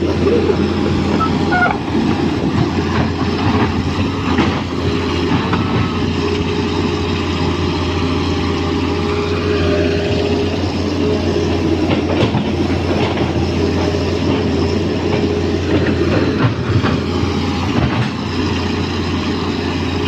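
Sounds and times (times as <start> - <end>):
excavator diesel engine drone: 0.0 - 20.0
short squeaks: 1.1 - 1.9.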